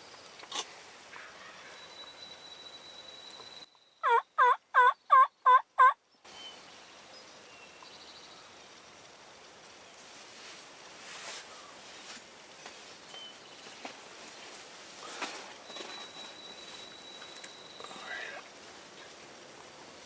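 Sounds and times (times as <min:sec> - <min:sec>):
turkey yelps: 0:04.0 - 0:06.0.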